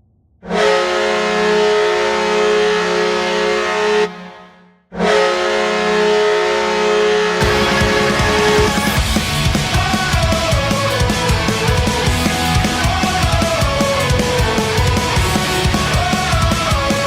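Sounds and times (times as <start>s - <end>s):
goal horn blasts: 0.4s - 9.0s.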